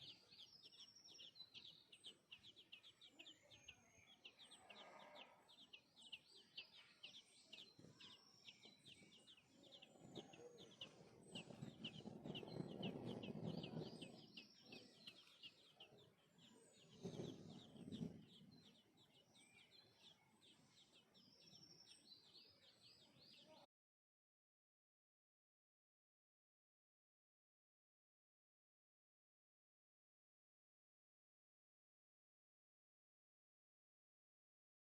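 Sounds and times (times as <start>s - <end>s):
sparrows chirping: 0.0s - 23.6s.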